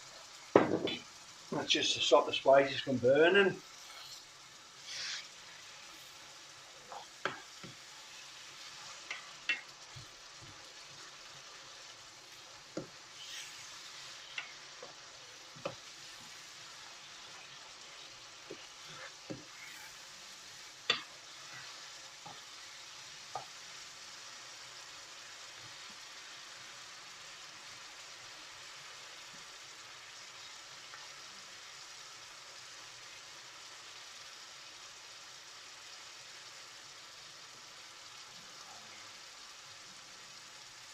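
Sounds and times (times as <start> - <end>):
spices sizzling in a pan: 0.0 - 40.9
utensil stirring against pan: 3.3 - 24.8.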